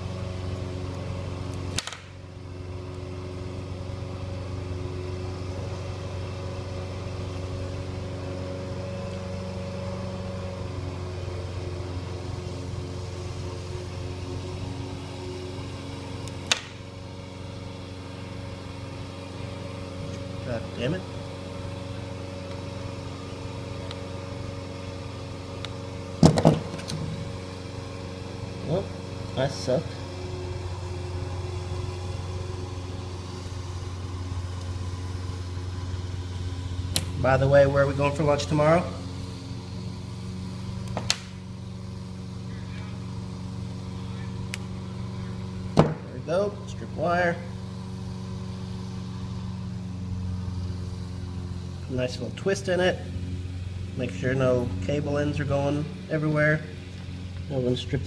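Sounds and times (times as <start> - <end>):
machine hum: 0.0 - 58.0
sharp click: 1.7 - 2.2, 40.8 - 41.4.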